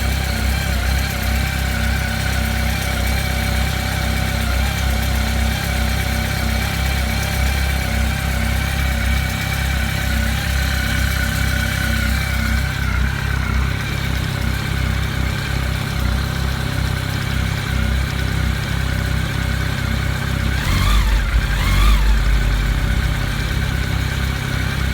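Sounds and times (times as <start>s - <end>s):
engine throttle blips: 0.0s - 24.9s
motorcycle engine idling: 0.0s - 24.9s.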